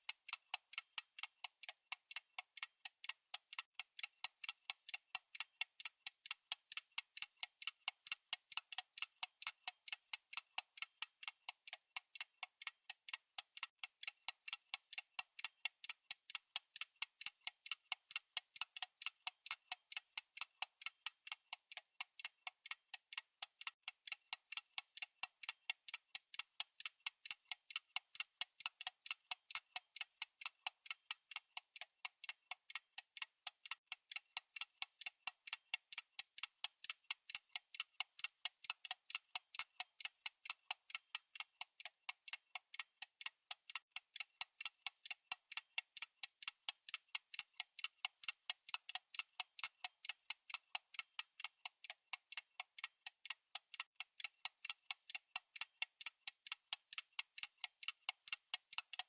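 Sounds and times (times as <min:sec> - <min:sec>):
timer ticking: 0:00.0 - 0:59.0.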